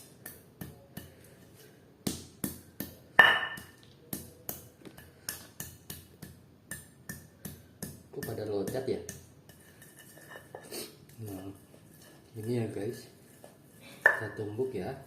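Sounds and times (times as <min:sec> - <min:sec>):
pestle pounding in a mortar: 0:05.3 - 0:09.6.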